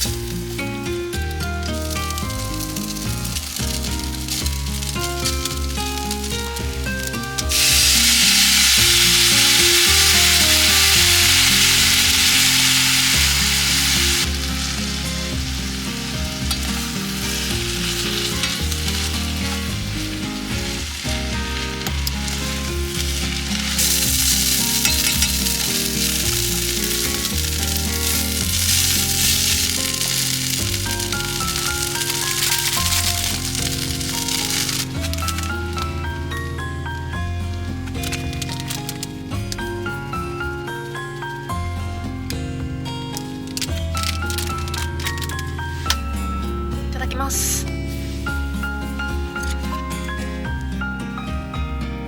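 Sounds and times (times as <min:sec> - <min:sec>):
food sizzling in a pan: 0:00.0 - 0:39.8
background music: 0:00.0 - 0:52.0.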